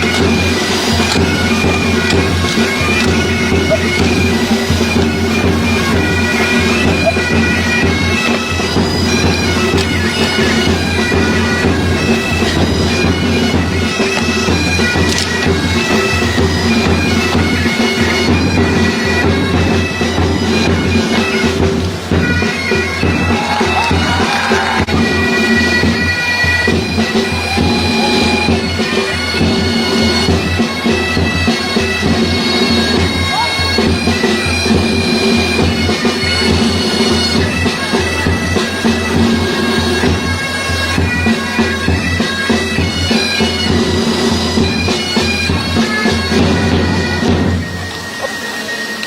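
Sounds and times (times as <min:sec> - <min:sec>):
bagpipes playing a march: 0:00.0 - 0:49.0.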